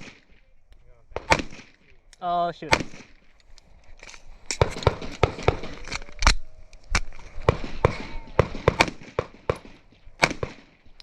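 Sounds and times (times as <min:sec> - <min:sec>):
airsoft pistol shots: 0:02.7 - 0:03.1, 0:07.5 - 0:10.6.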